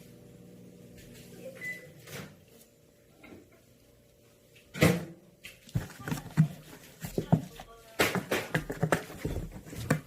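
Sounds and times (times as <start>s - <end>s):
kittens scrabbling at cardboard box: 5.6s - 10.0s.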